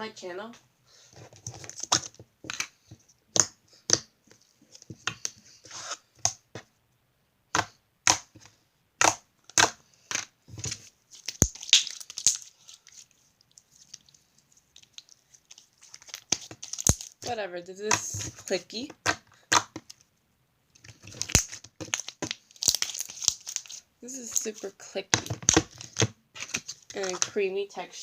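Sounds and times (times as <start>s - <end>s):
crunchy slime crackling: 9.0s - 17.3s, 20.8s - 27.4s.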